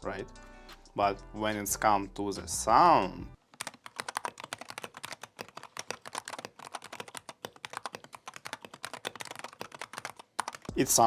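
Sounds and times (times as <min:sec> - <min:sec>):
fast keyboard typing clacks: 0:03.6 - 0:11.0.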